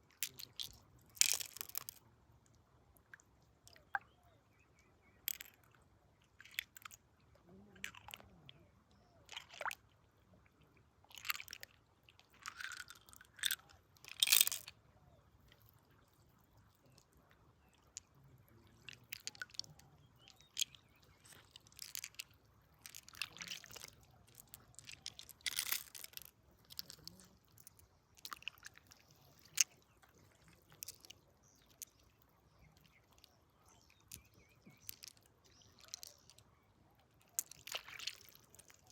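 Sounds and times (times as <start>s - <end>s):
wet gravel crunching and scraping: 0.2s - 2.0s, 12.2s - 14.7s, 18.5s - 36.5s, 37.1s - 38.9s.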